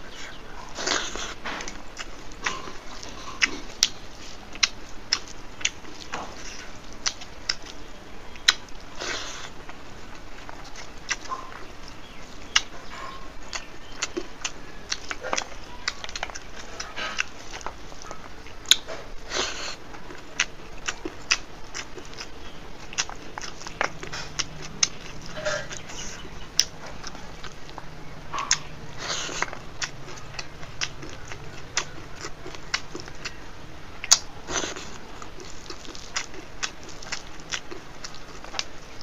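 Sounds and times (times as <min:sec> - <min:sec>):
person chewing food: 0:00.0 - 0:39.0.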